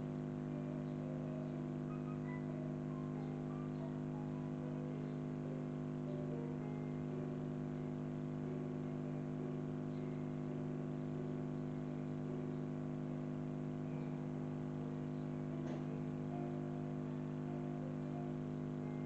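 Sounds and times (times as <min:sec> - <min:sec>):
steady low hum: 0:00.0 - 0:19.0
piano playing: 0:00.5 - 0:07.3, 0:15.5 - 0:16.9.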